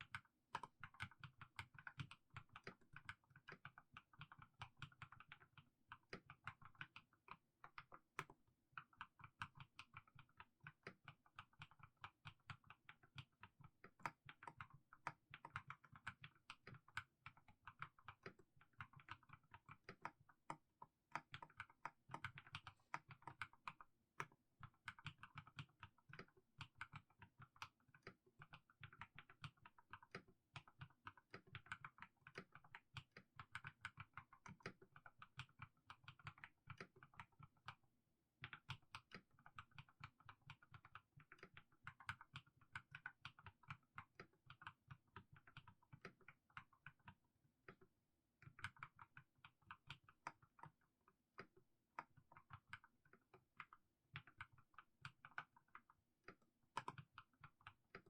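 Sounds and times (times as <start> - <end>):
mechanical keyboard typing: 52.4 - 58.0.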